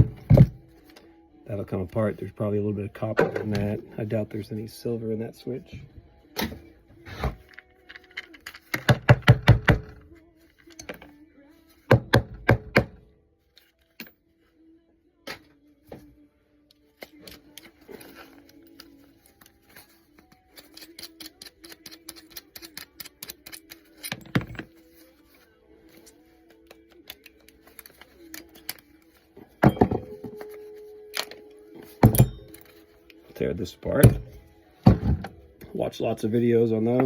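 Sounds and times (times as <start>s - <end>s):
metal parts clanking: 23.5s - 24.8s, 29.6s - 32.9s.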